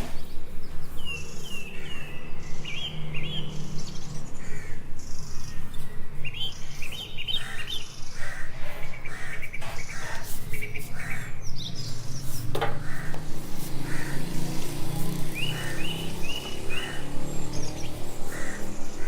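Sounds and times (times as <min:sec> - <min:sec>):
small birds chirping: 0:00.0 - 0:19.0.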